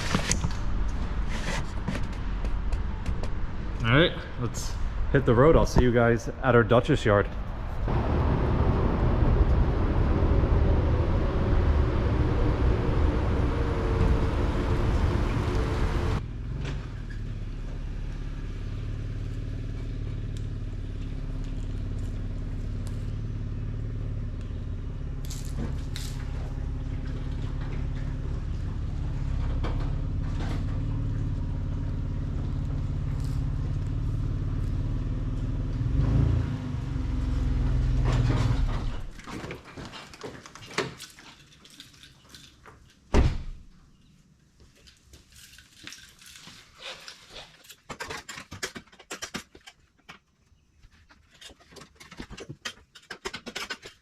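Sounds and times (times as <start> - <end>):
road noise: 0.0 - 39.3
pickup truck engine driving: 7.4 - 39.2.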